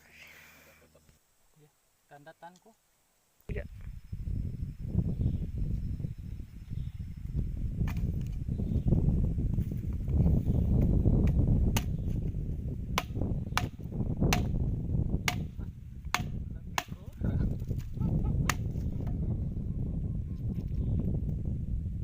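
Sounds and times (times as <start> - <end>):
sharp wooden knocks: 13.0 - 14.6, 15.2 - 15.5, 16.1 - 17.0.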